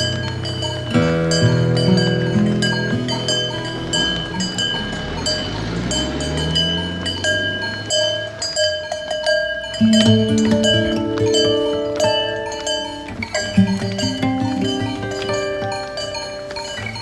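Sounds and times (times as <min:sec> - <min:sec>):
cow mooing: 0:00.0 - 0:08.0
music with plucked bell-like notes: 0:00.0 - 0:17.0.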